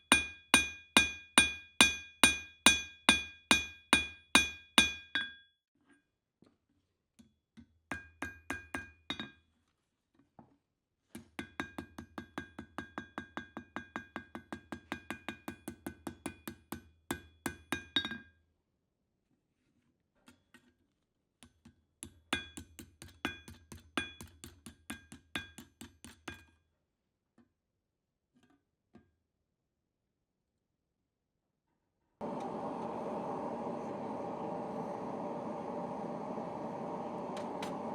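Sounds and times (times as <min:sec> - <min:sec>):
hammer striking steel on anvil: 0:00.1 - 0:05.3.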